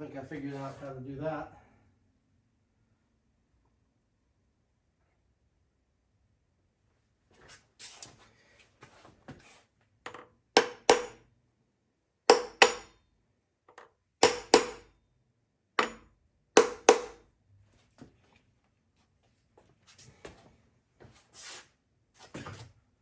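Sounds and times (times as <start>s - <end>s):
hammer striking metal: 10.6s - 11.2s, 12.3s - 12.9s, 14.2s - 14.9s, 15.8s - 17.2s.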